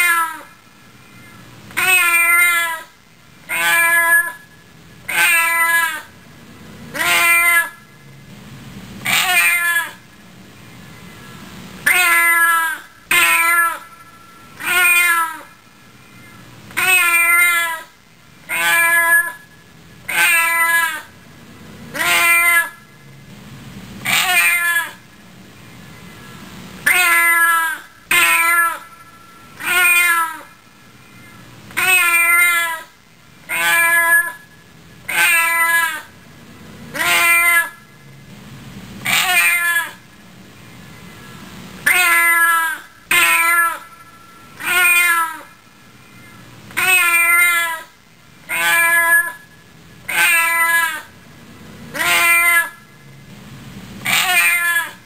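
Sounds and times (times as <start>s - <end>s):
cat meowing: 1.8s - 2.9s, 3.5s - 4.3s, 9.1s - 10.0s, 14.6s - 15.5s, 16.8s - 17.9s, 18.5s - 19.3s, 24.1s - 25.0s, 29.6s - 30.5s, 31.8s - 32.9s, 33.5s - 34.3s, 39.1s - 40.0s, 44.6s - 45.5s, 48.5s - 49.4s, 54.1s - 55.0s.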